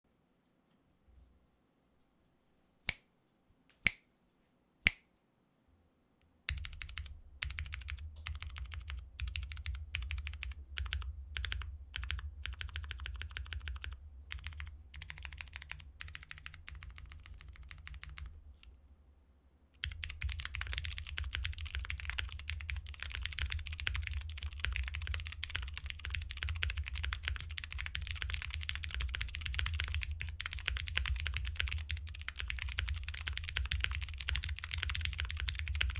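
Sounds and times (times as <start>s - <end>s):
mechanical keyboard typing: 6.5s - 18.3s, 19.8s - 35.9s.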